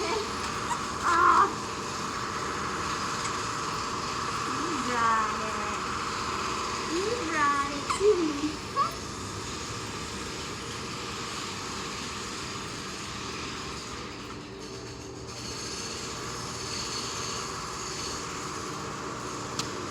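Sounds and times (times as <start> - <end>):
mechanical rumble with hiss: 0.0 - 19.9.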